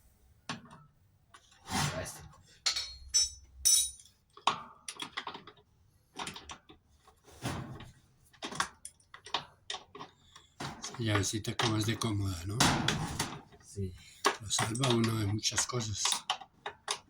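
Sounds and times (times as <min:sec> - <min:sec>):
ringing metal clink: 0:02.7 - 0:04.1.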